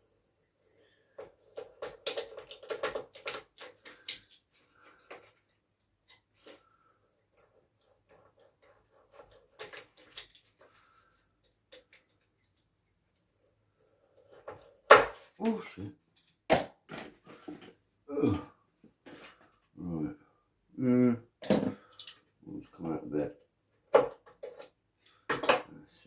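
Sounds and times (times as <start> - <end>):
small wooden pieces clicking: 1.4 - 5.2, 7.4 - 13.2.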